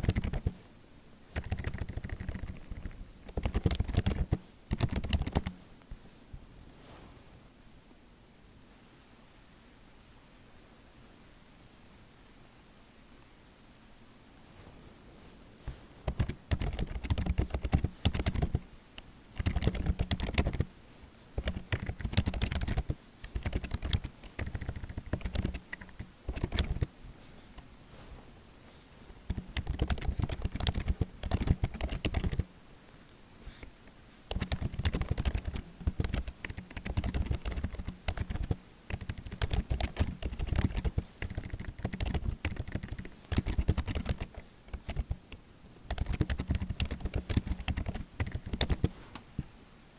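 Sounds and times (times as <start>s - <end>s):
keyboard typing clicks: 0.0s - 0.6s, 1.3s - 5.6s, 16.0s - 18.6s, 19.4s - 20.7s, 21.4s - 26.9s, 29.3s - 32.5s, 34.3s - 48.9s.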